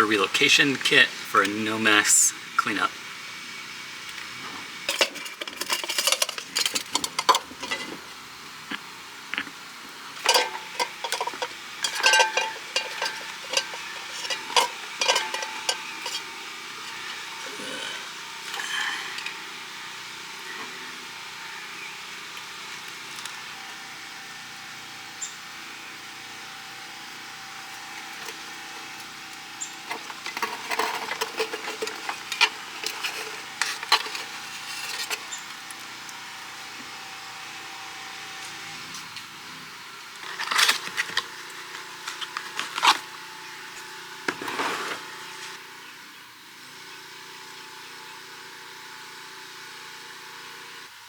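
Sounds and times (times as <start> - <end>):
faint hum: 0.0 - 22.5
metal tools clinking: 4.9 - 8.0, 10.2 - 17.3, 29.9 - 35.2.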